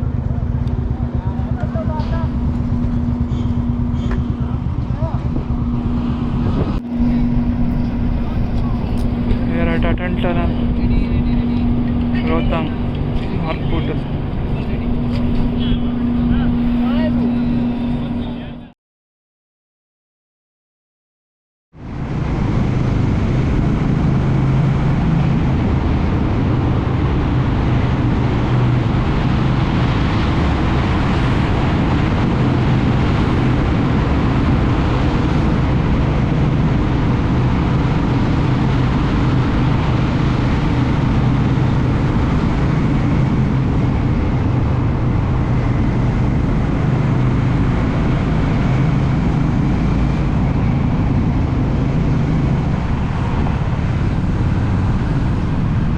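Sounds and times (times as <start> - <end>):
motorcycle engine humming: 0.0 - 18.7, 21.8 - 55.9
wind noise: 0.0 - 18.7, 21.8 - 55.9.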